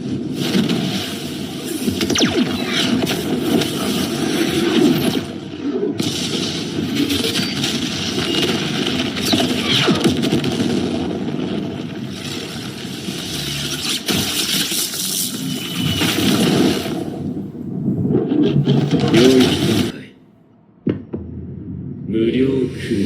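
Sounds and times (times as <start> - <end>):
loud rushing noise: 15.0 - 20.0.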